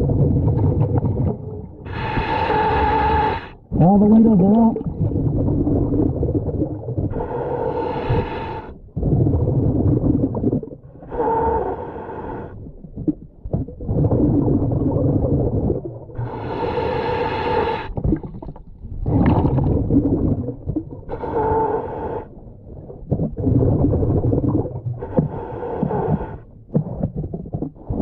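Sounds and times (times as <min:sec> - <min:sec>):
bubbling exhales: 0:00.0 - 0:28.0
diver breathing through regulator: 0:01.8 - 0:03.7, 0:07.0 - 0:09.2, 0:10.9 - 0:12.7, 0:16.1 - 0:18.1, 0:21.0 - 0:22.4, 0:25.0 - 0:26.8.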